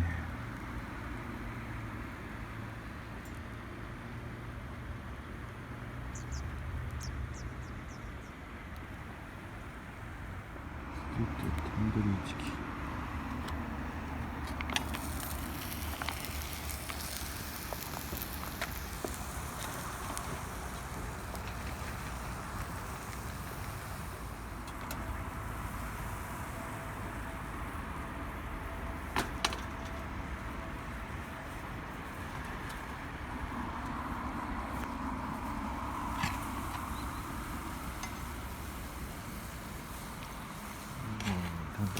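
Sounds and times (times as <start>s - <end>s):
fire rushing noise: 9.6s - 41.9s
sharp fire crackles: 13.6s - 41.9s.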